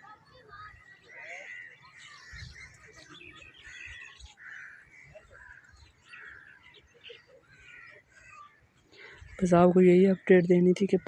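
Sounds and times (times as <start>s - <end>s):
birds calling: 0.0s - 11.0s
crows cawing: 1.1s - 2.6s, 3.2s - 9.5s.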